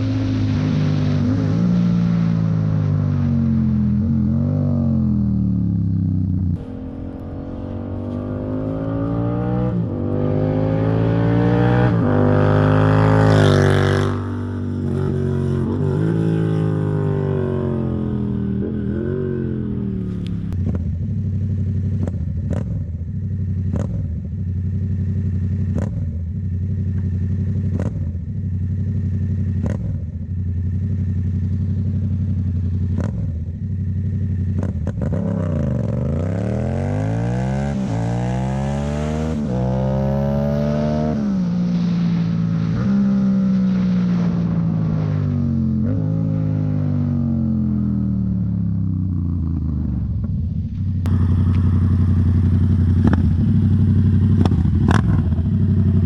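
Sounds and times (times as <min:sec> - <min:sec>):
loud motorcycle engine revving: 0:06.5 - 0:20.0, 0:32.9 - 0:41.7, 0:51.0 - 0:56.0.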